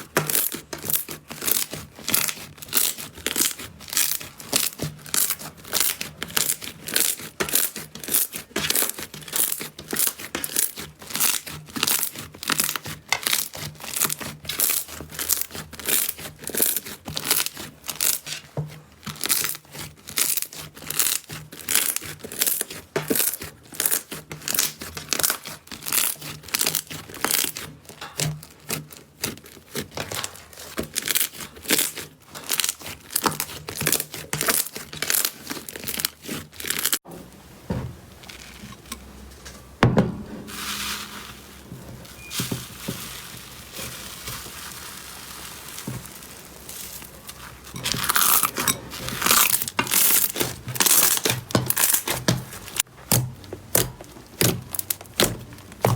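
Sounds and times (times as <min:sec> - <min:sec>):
slime squeezed crackling and popping: 0:43.7 - 0:52.9.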